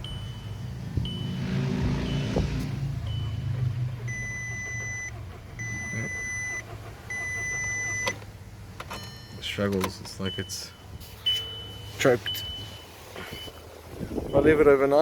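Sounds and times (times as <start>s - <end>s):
car engine running rough: 0.0s - 8.8s
car engine cranking: 0.0s - 14.9s
dashboard warning beeps: 0.0s - 15.0s.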